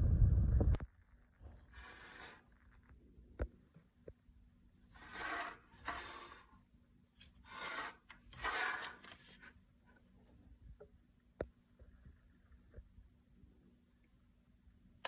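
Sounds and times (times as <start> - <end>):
rubbing or scraping strokes: 1.4 - 2.9, 4.8 - 9.6.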